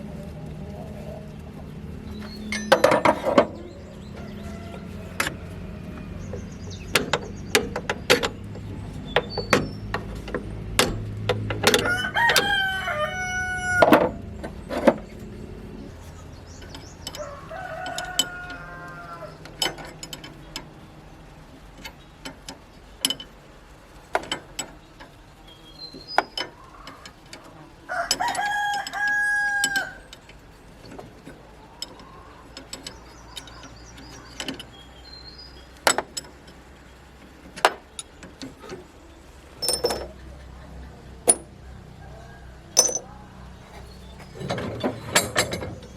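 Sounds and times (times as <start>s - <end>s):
sharp knocks and clinks: 2.2s - 4.3s, 39.6s - 40.6s, 41.2s - 41.7s, 42.7s - 45.9s
rooster crowing: 3.6s - 6.3s, 11.8s - 14.2s, 17.0s - 19.6s, 26.6s - 30.1s, 41.5s - 43.8s.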